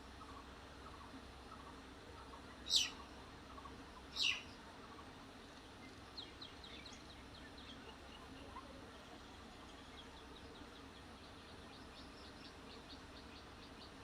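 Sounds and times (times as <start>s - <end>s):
faint low hum: 0.0s - 14.0s
faint high bird chirps: 2.6s - 3.0s, 4.1s - 4.6s.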